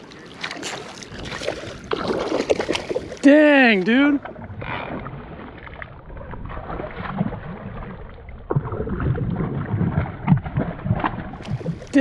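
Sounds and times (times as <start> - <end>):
rushing river water: 0.0 - 7.4, 11.4 - 12.0
wind rumble: 4.2 - 12.0.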